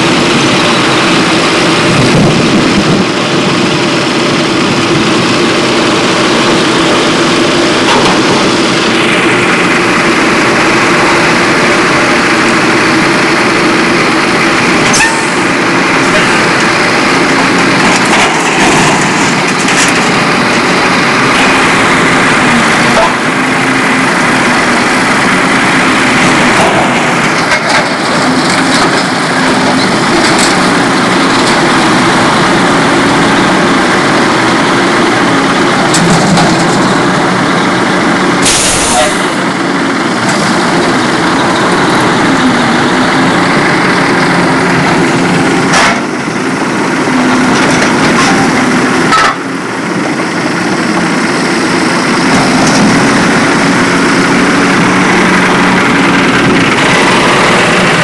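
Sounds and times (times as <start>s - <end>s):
diesel engine running hard: 0.0s - 58.0s
loud burst of noise: 38.3s - 39.6s.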